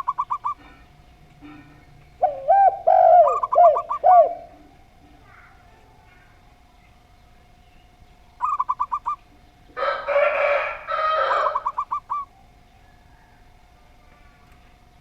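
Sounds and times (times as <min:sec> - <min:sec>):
harsh drawn-out bird call: 0:00.0 - 0:04.7, 0:08.4 - 0:12.5
dove cooing: 0:00.0 - 0:06.4, 0:08.4 - 0:13.5.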